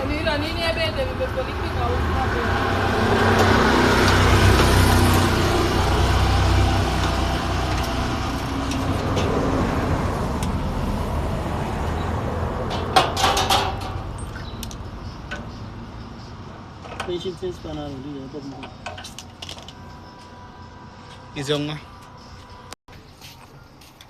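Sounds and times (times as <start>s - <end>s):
engine low rumble: 0.0s - 22.8s
sharp clattering knocks: 12.6s - 14.3s.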